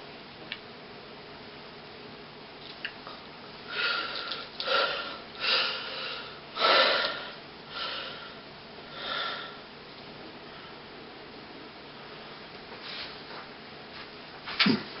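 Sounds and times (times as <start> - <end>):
breathy sniffing: 3.7 - 9.6.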